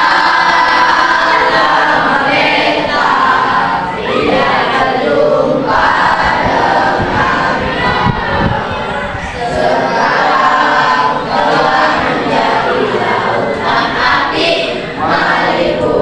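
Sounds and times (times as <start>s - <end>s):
children singing together: 0.0s - 16.0s.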